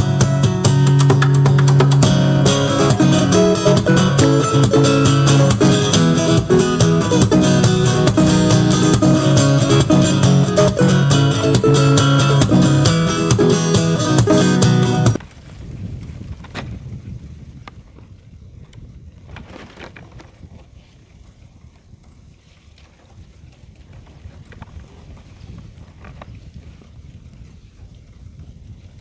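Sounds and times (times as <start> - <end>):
strummed guitar music: 0.0 - 15.2.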